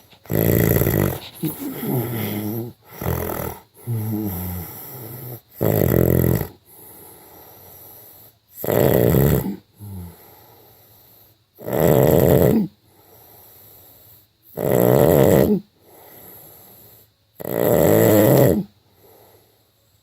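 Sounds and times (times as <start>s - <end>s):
wavering breaths: 0.0s - 5.1s
man snoring: 0.2s - 7.2s, 8.6s - 10.3s, 11.6s - 12.7s, 14.6s - 16.1s, 17.4s - 18.7s.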